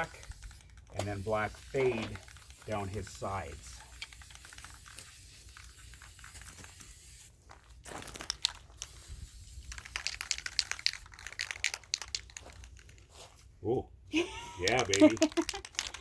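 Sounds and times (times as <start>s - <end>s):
spray paint bursts: 0.0s - 7.4s, 8.0s - 12.9s, 14.5s - 16.0s
aerosol hiss: 0.1s - 7.3s.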